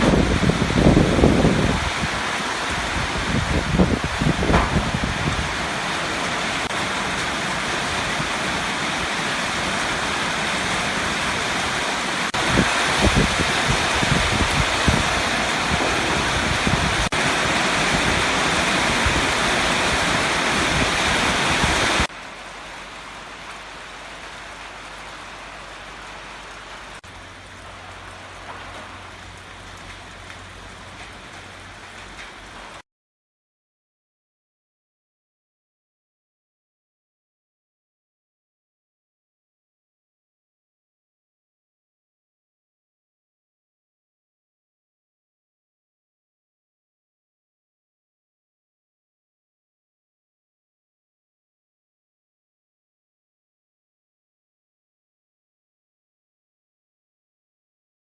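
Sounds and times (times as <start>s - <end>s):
heavy rain pouring: 0.0s - 32.8s
soft rain-like noise: 0.0s - 32.8s.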